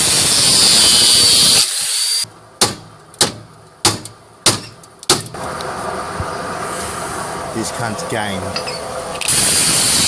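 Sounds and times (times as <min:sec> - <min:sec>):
power tool cutting metal spring: 0:00.0 - 0:02.3, 0:09.2 - 0:10.0.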